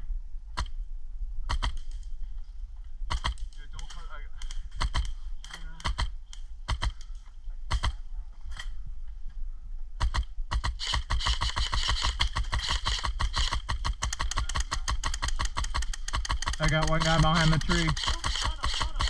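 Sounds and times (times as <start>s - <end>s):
airsoft gunshots: 3.1s - 3.5s, 7.7s - 8.0s, 10.0s - 19.0s.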